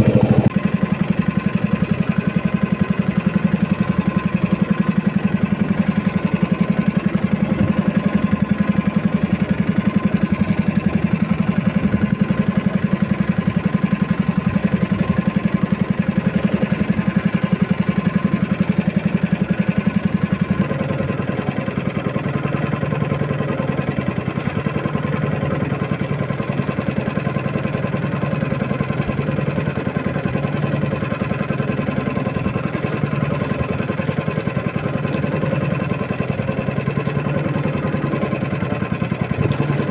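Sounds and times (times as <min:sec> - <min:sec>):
boat engine running: 0:00.0 - 0:39.9.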